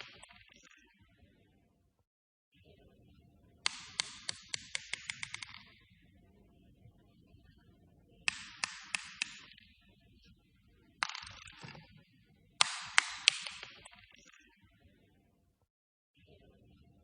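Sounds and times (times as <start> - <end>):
small hard ball bouncing on floor: 3.7 - 5.7, 8.3 - 9.6, 11.0 - 12.0, 12.6 - 14.0
ball rattle: 3.7 - 5.8, 8.3 - 9.6, 11.0 - 12.0, 12.6 - 14.0.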